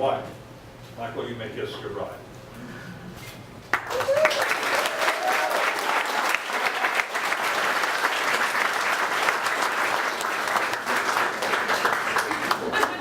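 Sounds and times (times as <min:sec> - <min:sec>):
crowd clapping: 0:03.7 - 0:13.0
crowd cheering: 0:03.9 - 0:13.0.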